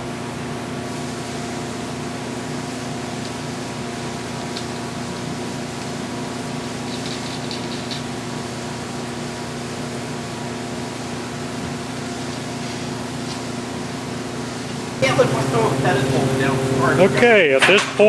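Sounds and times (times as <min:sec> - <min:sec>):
steady machine hum: 0:00.0 - 0:18.0.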